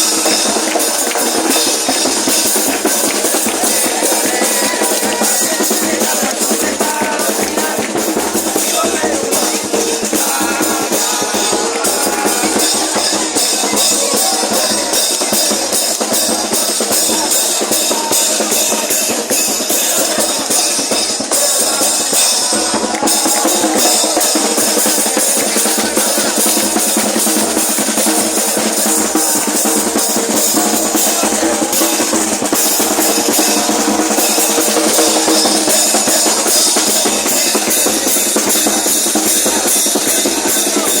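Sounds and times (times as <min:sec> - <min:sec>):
bass drum beat: 0:00.0 - 0:41.0
cymbals: 0:00.0 - 0:41.0
snare drum: 0:00.0 - 0:41.0.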